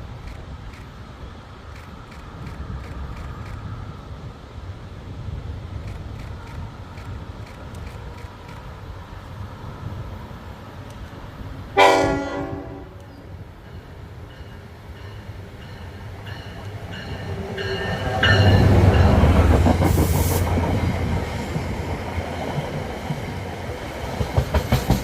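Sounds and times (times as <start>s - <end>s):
train passing rumble: 0.0s - 25.0s
rail clatter: 5.7s - 9.4s, 10.8s - 25.0s
locomotive air horn honk: 11.8s - 13.0s.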